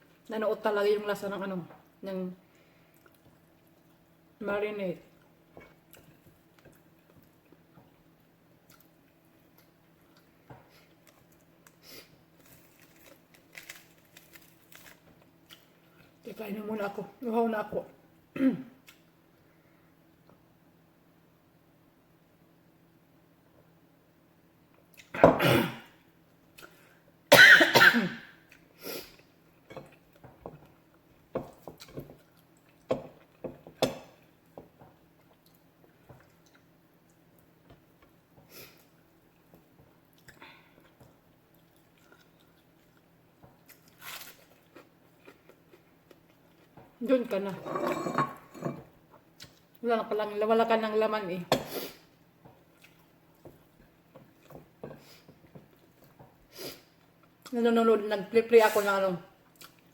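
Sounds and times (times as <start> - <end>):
person coughing: 18.4 - 18.8, 25.2 - 25.9, 27.3 - 28.3
person chewing food: 35.2 - 47.0, 52.5 - 56.3, 59.4 - 59.9.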